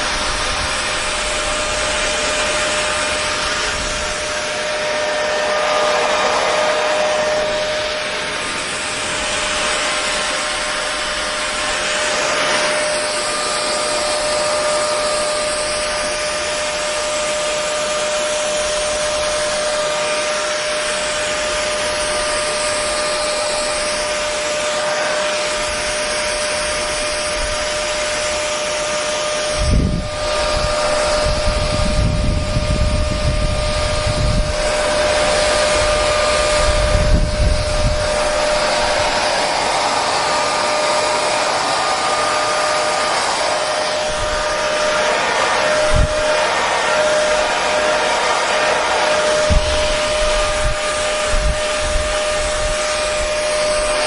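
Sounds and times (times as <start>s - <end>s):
hair dryer running: 0.0s - 54.0s
rumble of air buffeting: 29.5s - 39.4s, 49.4s - 53.7s.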